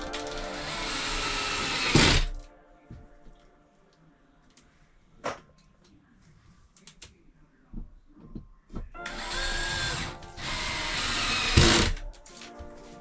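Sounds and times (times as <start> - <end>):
power drill running: 0.2 - 2.4, 9.0 - 12.0.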